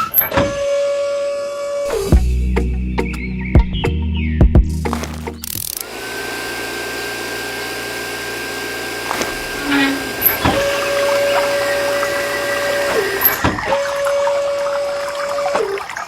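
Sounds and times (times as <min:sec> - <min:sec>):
small electric motors whining: 0:05.4 - 0:15.5
lower motor whine: 0:05.7 - 0:15.2
low hum: 0:05.8 - 0:15.4.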